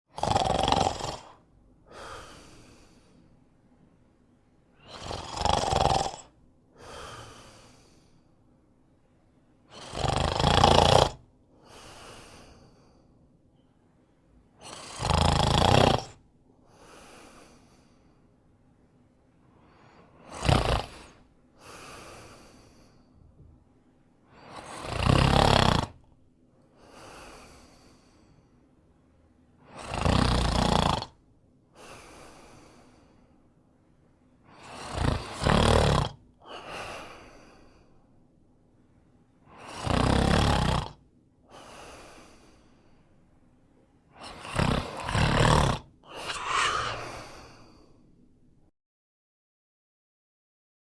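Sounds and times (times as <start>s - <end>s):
person snoring: 0.1s - 3.2s, 4.8s - 8.2s, 9.7s - 12.9s, 14.6s - 18.0s, 19.7s - 23.1s, 24.4s - 26.0s, 29.7s - 31.2s, 34.5s - 37.8s, 39.5s - 42.6s, 44.2s - 47.9s
quiet breath: 1.3s - 5.0s, 6.7s - 9.9s, 11.5s - 14.8s, 16.6s - 24.8s, 26.5s - 29.9s, 31.1s - 35.5s, 36.2s - 39.9s, 40.8s - 48.7s.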